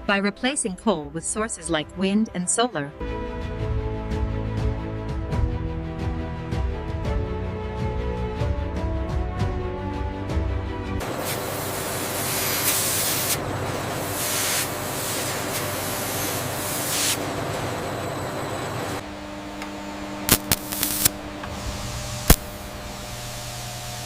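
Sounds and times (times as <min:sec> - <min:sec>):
music: 0:00.0 - 0:11.1
steady hissing spray: 0:11.0 - 0:17.2, 0:20.3 - 0:24.0
low machine hum: 0:11.0 - 0:24.0.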